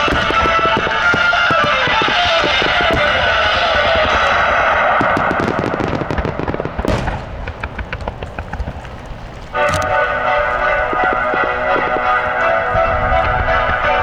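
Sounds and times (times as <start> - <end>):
fireworks bangs and crackles: 0.0 - 14.0.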